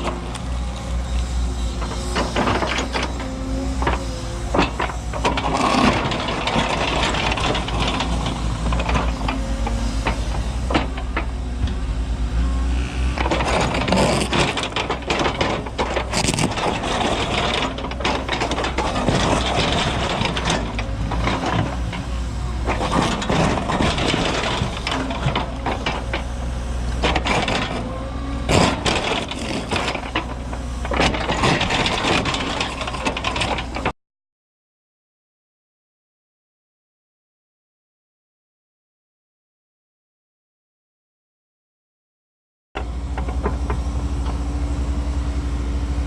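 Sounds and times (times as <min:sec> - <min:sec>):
excavator diesel engine: 0:00.0 - 0:33.9, 0:42.8 - 0:46.0
ripper tooth scraping rock: 0:13.2 - 0:20.2, 0:28.5 - 0:30.1.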